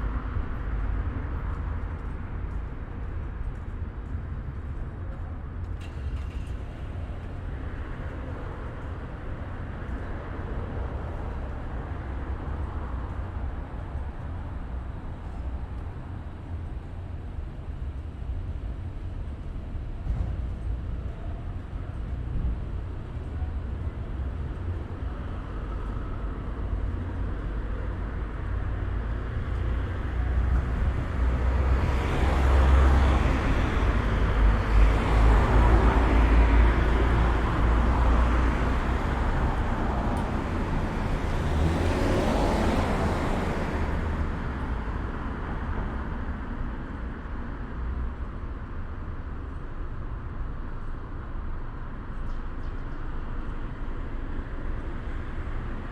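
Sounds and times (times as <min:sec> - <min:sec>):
road traffic rumble: 0:00.0 - 0:55.9
vehicles passing: 0:00.0 - 0:55.9.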